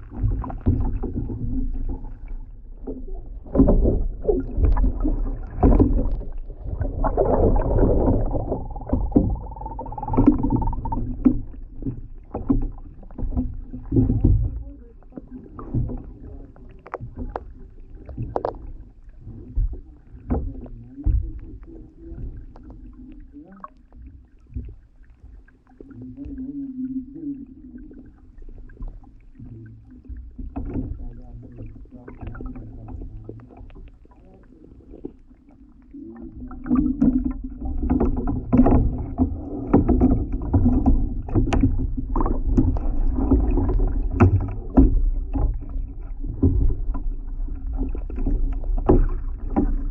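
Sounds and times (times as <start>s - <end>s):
kayak paddle strokes: 0.0s - 26.6s, 27.2s - 49.9s
water noise: 0.0s - 49.9s.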